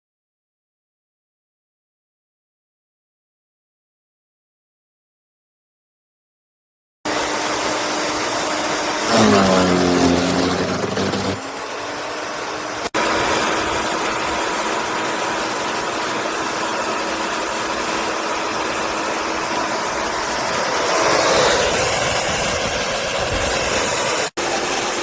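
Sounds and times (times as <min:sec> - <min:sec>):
wood chipper motor humming: 0:07.1 - 0:25.0.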